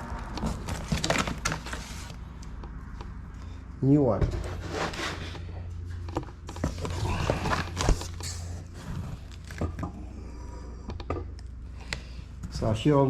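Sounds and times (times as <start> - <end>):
steady low hum: 0.0 - 13.0
box handling clicks and scrapes: 6.5 - 9.6.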